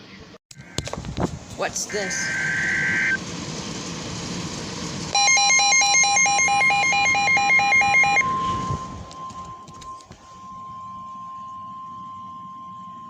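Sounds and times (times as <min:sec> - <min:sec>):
rapid electronic beeping: 0:01.9 - 0:03.2, 0:05.2 - 0:12.7
steady alarm tone: 0:01.9 - 0:03.2, 0:05.1 - 0:13.0.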